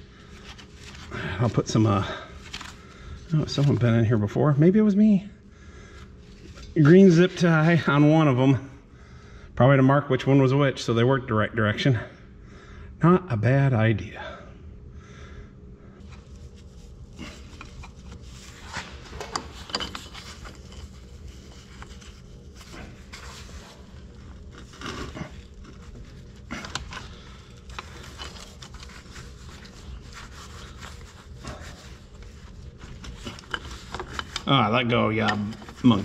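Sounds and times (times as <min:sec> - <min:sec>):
steady low hum: 0:00.0 - 0:36.0
metal wrenches clinking and scraping: 0:17.5 - 0:23.6, 0:31.7 - 0:36.0.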